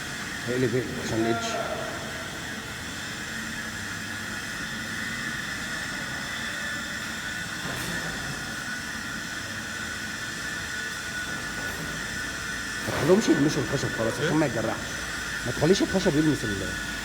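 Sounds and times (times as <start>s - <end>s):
machine whine: 0.0s - 17.0s
production machinery humming: 0.0s - 17.0s.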